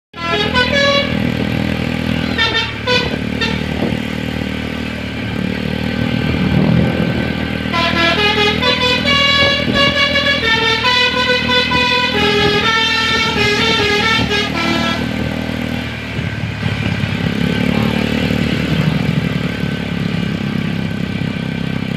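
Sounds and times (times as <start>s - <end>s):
multi-tone air horn melody: 0.1s - 4.0s, 7.7s - 15.4s
bus engine running: 0.1s - 21.9s.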